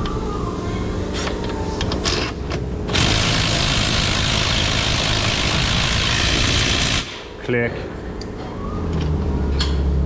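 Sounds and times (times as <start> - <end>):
loud steady machine noise: 2.9 - 7.4.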